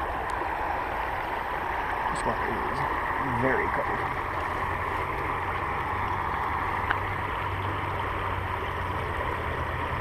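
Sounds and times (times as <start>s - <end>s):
creek water running: 0.0s - 10.0s
light tick: 6.8s - 7.0s.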